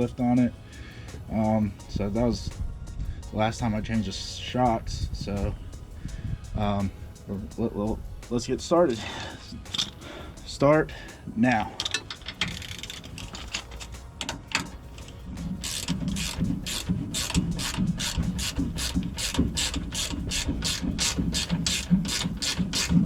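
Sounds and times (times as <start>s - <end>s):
ratchet wrench clicking: 8.9s - 23.0s.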